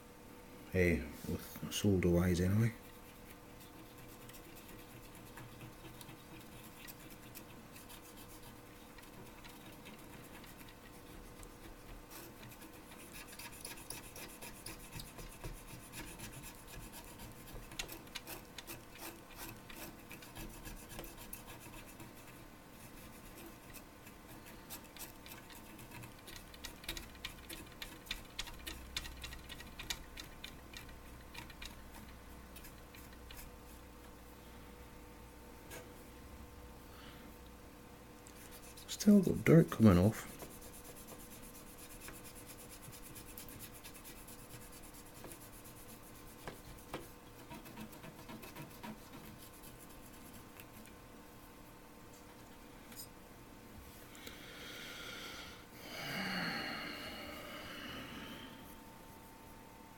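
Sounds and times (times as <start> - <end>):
scratchy scrubbing of circuit board: 2.2 - 28.9, 38.4 - 50.9.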